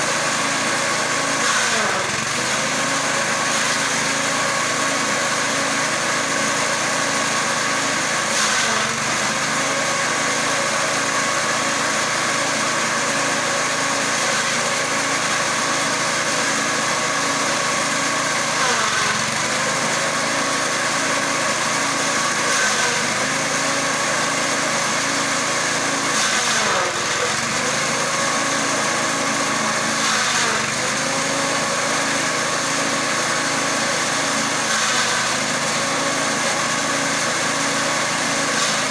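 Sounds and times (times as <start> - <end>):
grass chopper engine running: 0.0 - 38.9.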